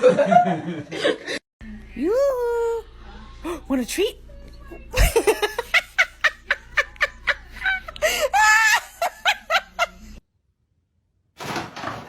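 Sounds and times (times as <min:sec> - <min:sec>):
person laughing: 0:04.9 - 0:10.2.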